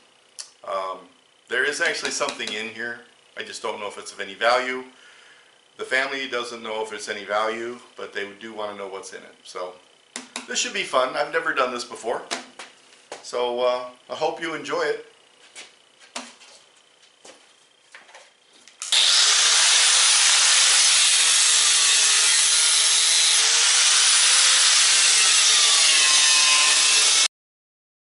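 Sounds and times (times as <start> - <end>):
cutoff wheel grinding steel: 18.8 - 27.3.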